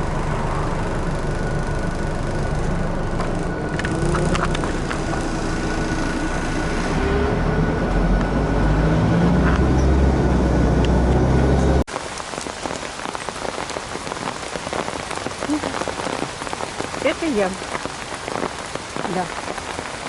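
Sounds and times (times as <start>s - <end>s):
loud low rumble: 0.0s - 11.8s
heavy rain on an umbrella: 3.2s - 7.1s, 11.9s - 20.0s.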